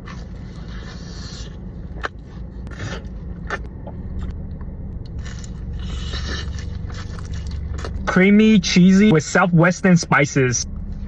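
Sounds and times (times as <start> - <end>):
low rumble: 0.0 - 11.0
crunching bites: 5.0 - 8.0.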